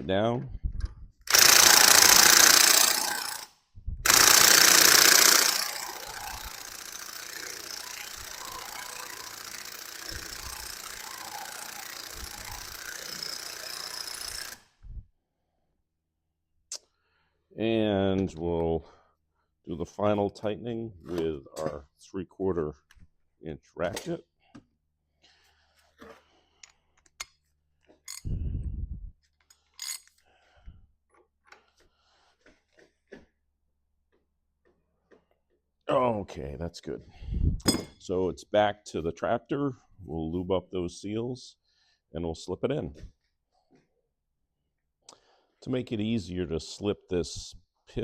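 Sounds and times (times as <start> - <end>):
impact wrench hammering: 1.3 - 3.5, 4.1 - 14.6.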